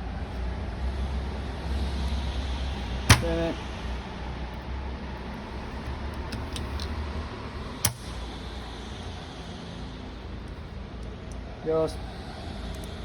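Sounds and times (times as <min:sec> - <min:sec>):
steady low rumble: 0:00.0 - 0:13.0
sharp metallic click: 0:03.1 - 0:03.6, 0:07.8 - 0:08.2.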